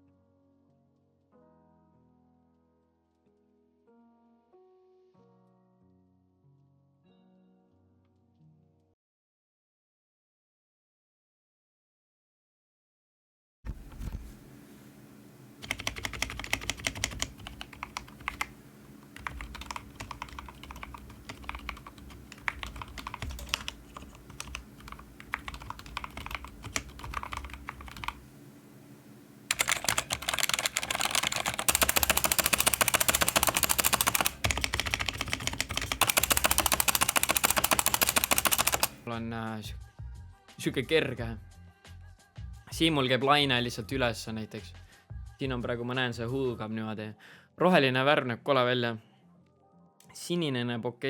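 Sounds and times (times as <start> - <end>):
mechanical keyboard typing: 15.6 - 28.3, 29.4 - 39.1.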